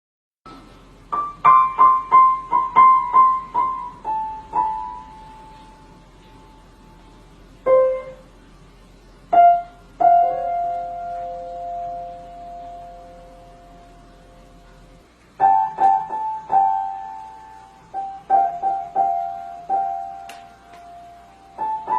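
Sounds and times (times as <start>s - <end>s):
high piano notes: 0.5s - 8.3s, 9.3s - 21.9s.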